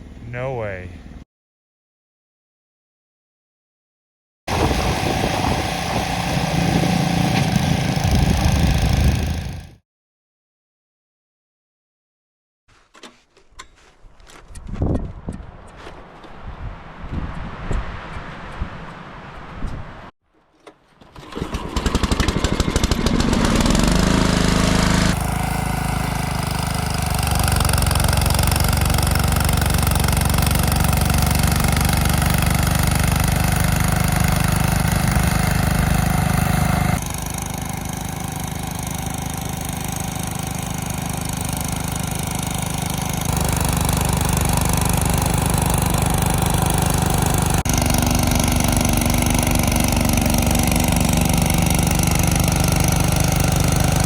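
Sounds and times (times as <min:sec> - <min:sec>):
engine running: 0:04.5 - 0:09.8, 0:21.2 - 0:54.0.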